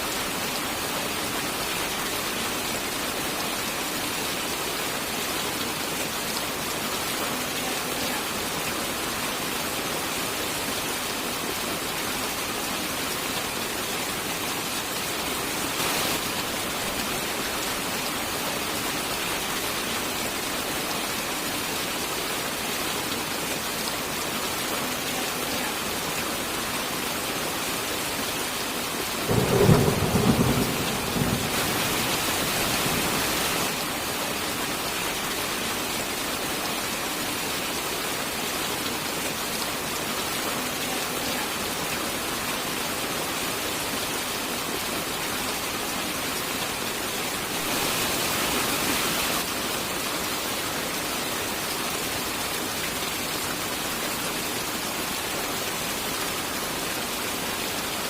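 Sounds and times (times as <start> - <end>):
heavy rain: 0.0 - 58.0
thunderclap rumble: 29.3 - 33.5.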